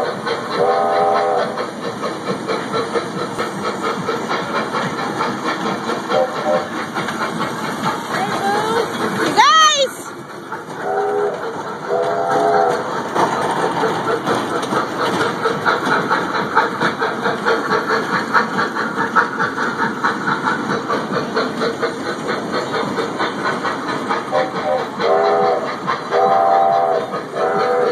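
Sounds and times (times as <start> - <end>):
train wheels clacking on rails: 0.0 - 27.9
train whistle toots: 0.6 - 1.6, 10.8 - 12.9, 24.3 - 27.9.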